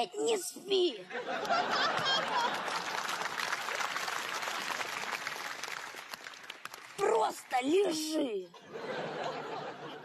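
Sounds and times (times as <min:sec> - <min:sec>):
audience laughter: 0:01.1 - 0:03.2, 0:08.6 - 0:10.0
audience applause: 0:01.4 - 0:07.2.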